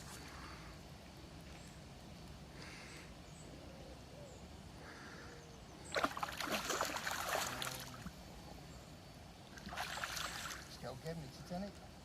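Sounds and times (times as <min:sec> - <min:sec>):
low background noise: 0:00.0 - 0:12.0
fish splashing in water: 0:05.9 - 0:08.1, 0:09.6 - 0:10.7.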